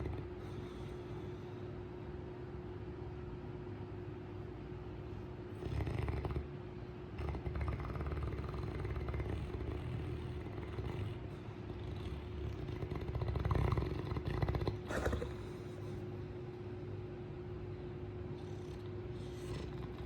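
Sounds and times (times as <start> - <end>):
dog snoring: 0.0 - 1.6, 5.5 - 6.5, 7.1 - 16.0, 18.3 - 20.0.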